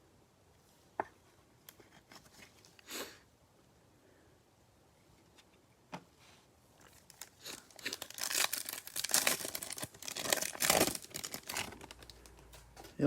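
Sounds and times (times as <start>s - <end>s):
wrapper crinkling and tearing: 6.8s - 12.6s.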